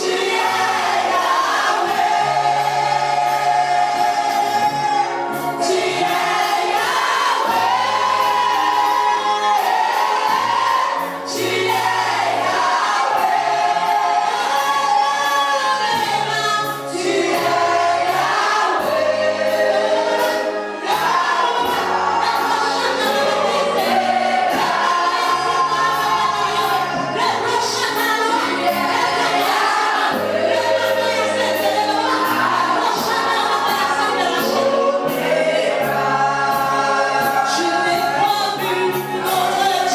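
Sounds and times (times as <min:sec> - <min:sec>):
gospel choir singing: 0:00.0 - 0:39.9.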